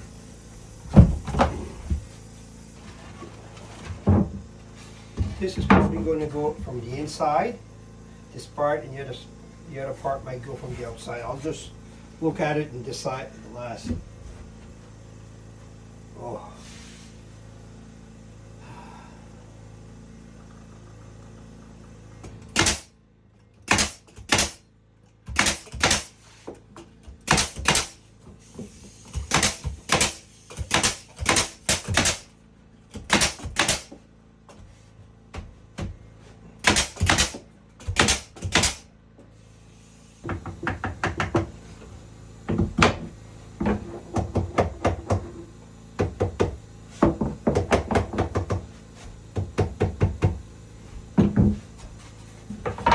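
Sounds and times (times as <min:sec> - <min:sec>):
hammer striking wood: 0:22.6 - 0:22.9, 0:23.7 - 0:24.6, 0:25.3 - 0:26.2, 0:27.2 - 0:28.0, 0:29.2 - 0:32.3, 0:33.0 - 0:34.0, 0:36.6 - 0:38.8, 0:40.2 - 0:41.5, 0:46.0 - 0:48.7, 0:49.3 - 0:50.4.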